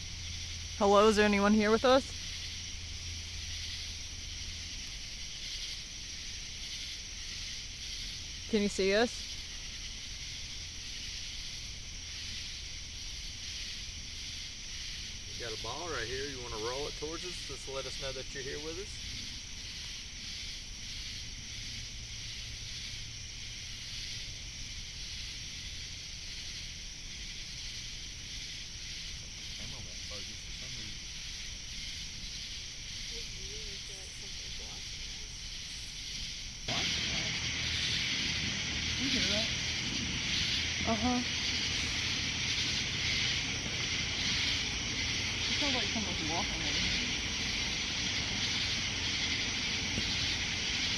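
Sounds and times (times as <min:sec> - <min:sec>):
night insects chirping: 0:00.0 - 0:50.9
faint low rumble: 0:27.3 - 0:50.9
low hum: 0:36.7 - 0:50.9.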